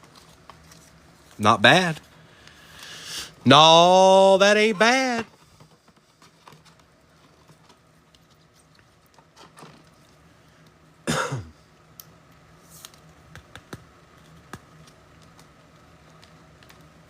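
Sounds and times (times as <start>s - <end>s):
person coughing: 11.0s - 11.6s
trading cards being handled: 12.5s - 16.9s.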